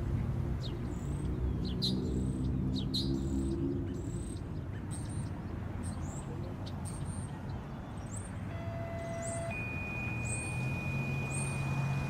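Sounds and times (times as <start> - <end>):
small birds chirping: 0.0 - 12.0
low engine hum: 8.5 - 12.0.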